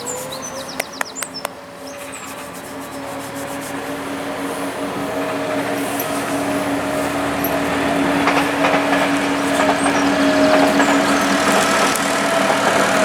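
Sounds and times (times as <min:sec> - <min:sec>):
vehicle approaching with hum: 0:00.0 - 0:13.0.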